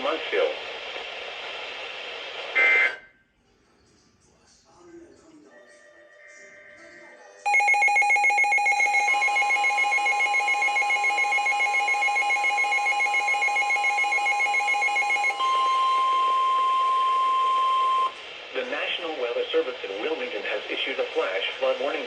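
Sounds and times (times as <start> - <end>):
pulsing electronic alarm: 7.5 - 18.2
steady warning alarm tone: 7.5 - 18.2.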